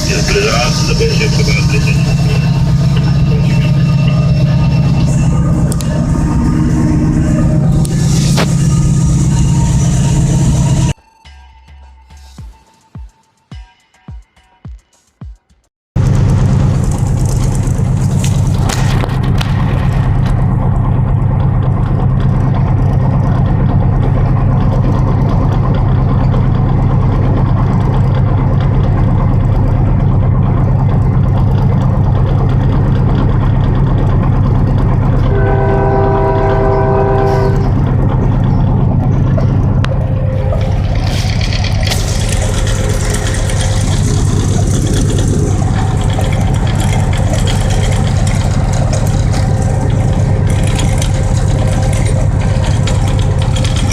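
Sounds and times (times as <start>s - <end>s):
locomotive engine drone: 0.0s - 12.4s, 16.0s - 53.9s
locomotive horn: 34.7s - 38.4s.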